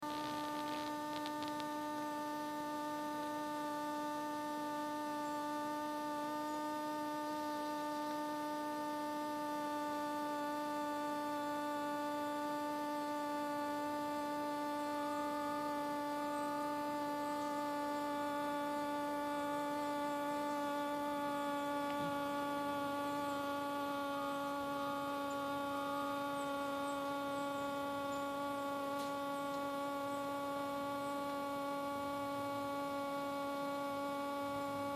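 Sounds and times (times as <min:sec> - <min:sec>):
hoverfly buzzing: 0:00.0 - 0:34.9.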